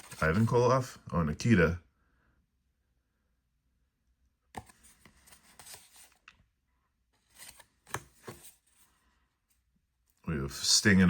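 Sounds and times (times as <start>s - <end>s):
cards rustling and scraping: 0.0s - 0.6s, 4.5s - 10.2s.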